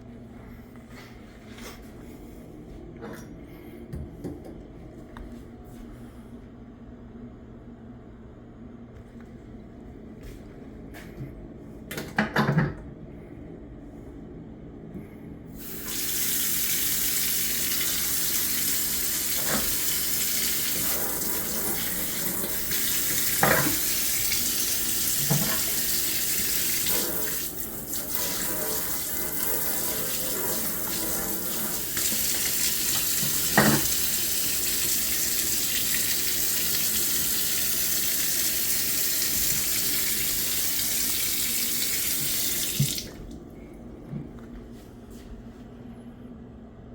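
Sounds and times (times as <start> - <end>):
faucet running water into sink: 15.6 - 43.3.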